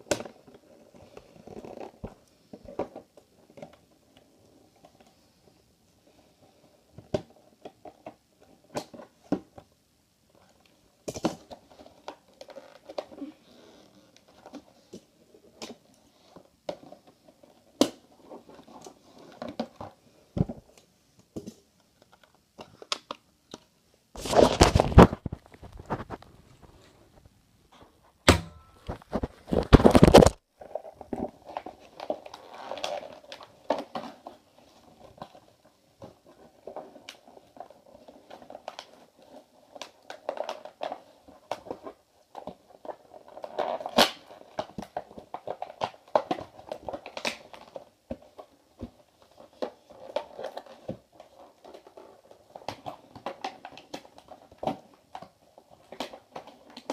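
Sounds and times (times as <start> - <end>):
packaging rough rustling or tearing: 24.2 - 26.8, 28.8 - 35.6
packaging clicks and crinkling: 28.7 - 56.9.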